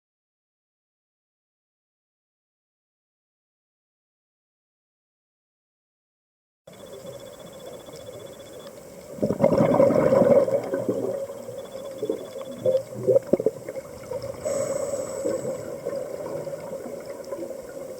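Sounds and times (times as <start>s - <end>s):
bubbles popping: 9.2s - 11.3s
scuba regulator breathing underwater: 12.6s - 17.0s.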